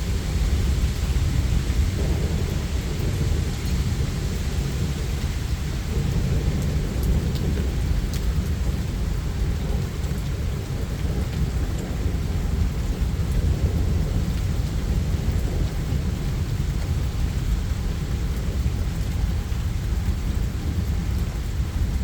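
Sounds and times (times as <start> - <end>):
low rumble of thunder: 0.0 - 22.0
steady rain: 0.0 - 22.0
raindrop ticks: 5.1 - 22.0.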